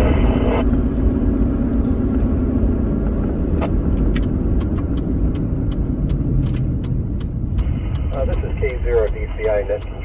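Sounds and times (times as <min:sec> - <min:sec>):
vehicle rumble from inside cab: 0:00.0 - 0:10.0
sharp ticks: 0:04.1 - 0:10.0.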